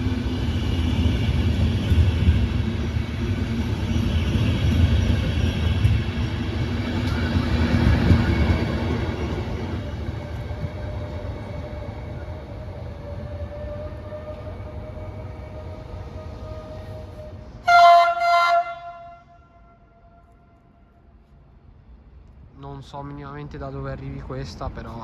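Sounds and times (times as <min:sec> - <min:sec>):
train wheels rumbling on rail: 0:00.0 - 0:19.3.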